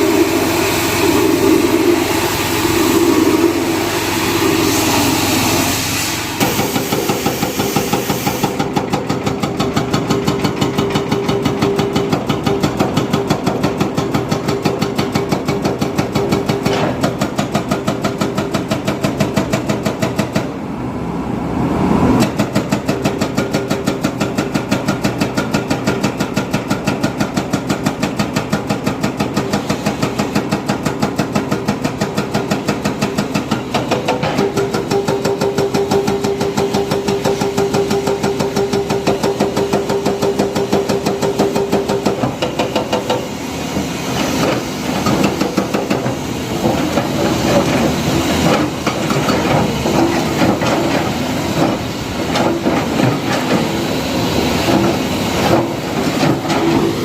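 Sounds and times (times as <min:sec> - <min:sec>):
steady whine: 0:00.0 - 0:06.5
diesel engine chugging: 0:00.0 - 0:20.6.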